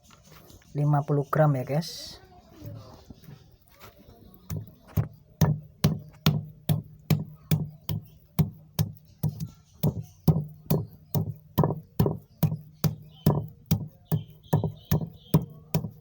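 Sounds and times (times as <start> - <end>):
pestle pounding in a mortar: 4.4 - 16.0.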